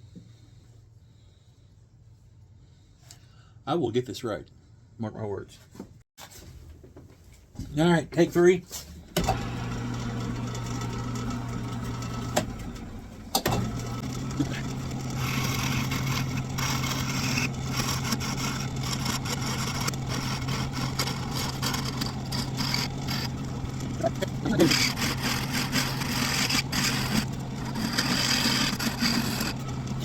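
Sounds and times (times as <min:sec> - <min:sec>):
turning tool cutting wood: 0:09.2 - 0:30.0
wood lathe motor humming: 0:09.2 - 0:30.0.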